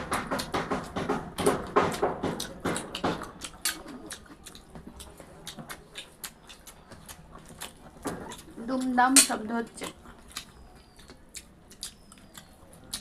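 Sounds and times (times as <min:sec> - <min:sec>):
chewing crunchy fried food: 0:01.7 - 0:13.0.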